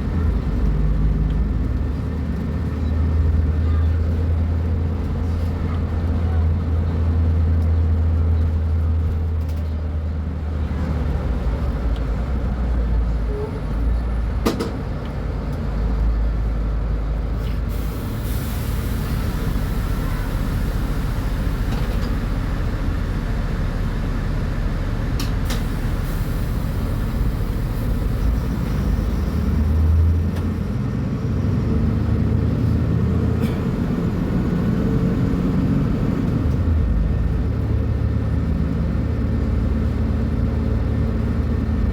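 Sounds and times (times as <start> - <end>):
bus diesel engine rumbling: 0.0 - 41.9
air brake hiss: 17.4 - 22.2, 25.4 - 29.1.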